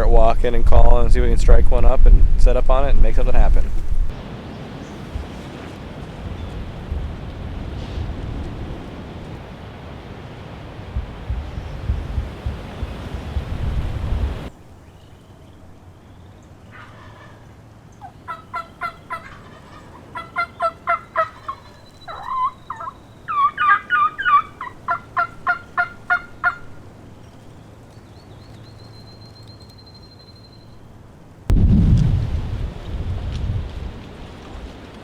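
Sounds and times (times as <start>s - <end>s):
wind buffeting microphone: 0.0s - 14.5s, 31.5s - 35.0s
turkey calling: 16.7s - 26.9s.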